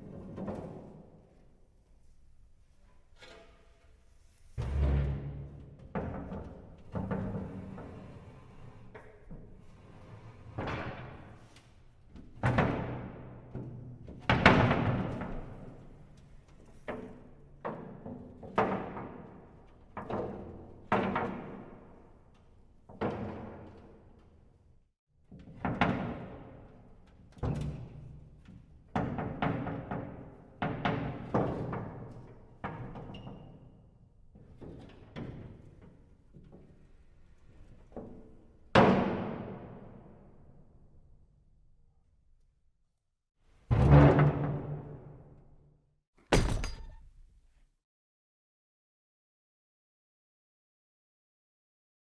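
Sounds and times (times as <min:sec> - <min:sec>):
heavy iron doors slamming: 0:46.3 - 0:47.3.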